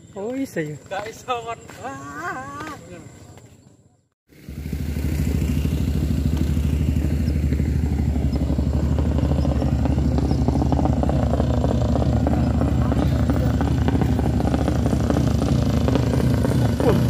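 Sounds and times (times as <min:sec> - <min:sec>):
motorcycle engine running: 0:04.3 - 0:17.0.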